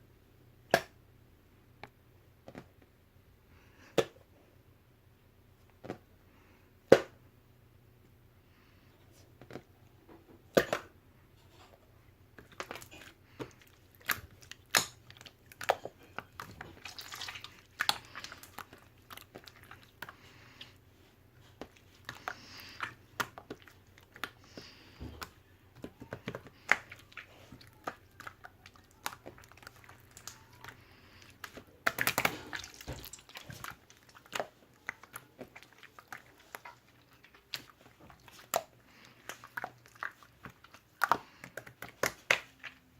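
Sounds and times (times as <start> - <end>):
crunchy chewing: 26.1 - 42.7.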